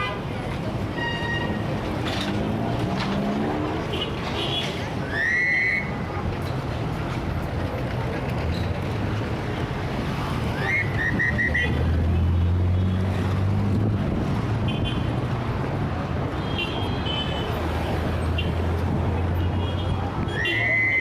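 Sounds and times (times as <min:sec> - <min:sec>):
heavy traffic engines and tyres: 0:00.0 - 0:21.0
large vehicle engine drone: 0:01.6 - 0:03.9, 0:06.0 - 0:14.6.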